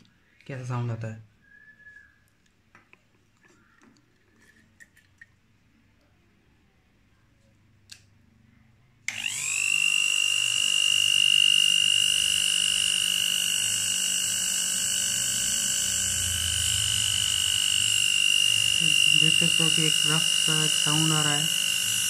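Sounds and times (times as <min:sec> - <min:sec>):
hand grinder motor whining: 0:09.1 - 0:22.0.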